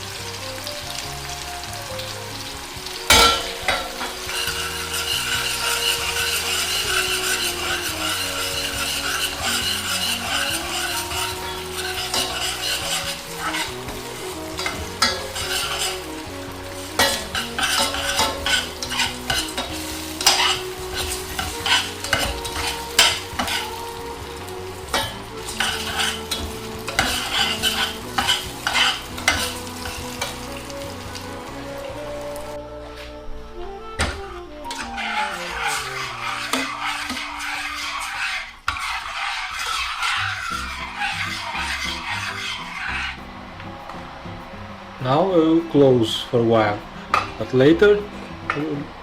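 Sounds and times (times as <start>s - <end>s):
onions and rice sizzling in oil: 0.0s - 32.6s, 33.9s - 49.0s
utensil scraping against pan: 2.3s - 32.0s, 34.6s - 43.3s.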